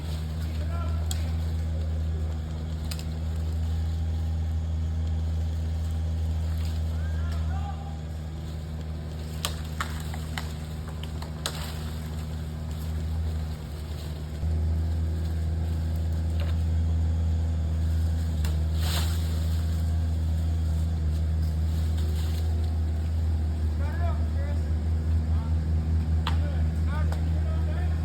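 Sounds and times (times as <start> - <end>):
machine engine droning: 0.0 - 28.0.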